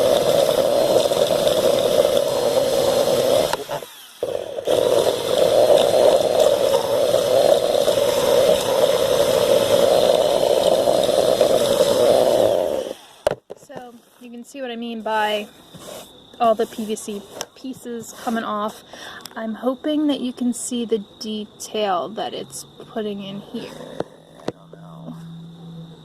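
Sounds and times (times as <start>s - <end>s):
electric drill grinding plastic pipe: 0.0s - 13.6s.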